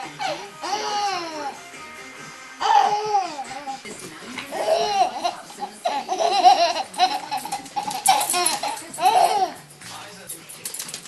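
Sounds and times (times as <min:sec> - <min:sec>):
baby laughing and giggling: 0:00.0 - 0:01.6, 0:02.6 - 0:03.8, 0:04.4 - 0:09.6.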